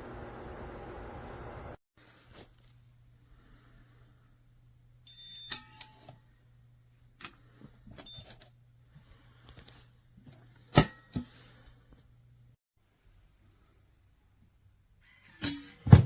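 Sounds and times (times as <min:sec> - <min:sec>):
metal lid and latch clanking: 0:15.2 - 0:16.0.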